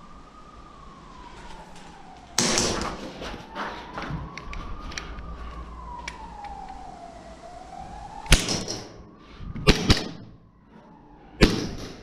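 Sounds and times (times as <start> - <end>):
faint gliding siren-like tone: 0.0 - 12.0
airsoft pistol shots: 2.4 - 2.9, 8.3 - 8.9, 9.6 - 10.3, 11.4 - 12.0.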